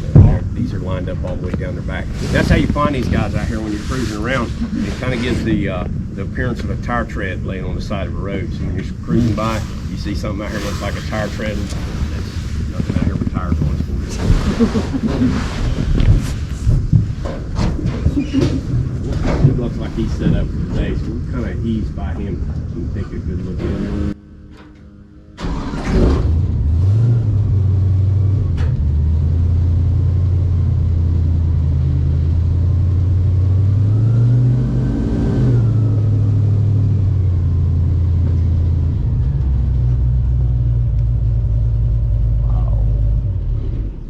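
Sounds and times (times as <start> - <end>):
airboat engine and propeller: 0.0 - 15.2.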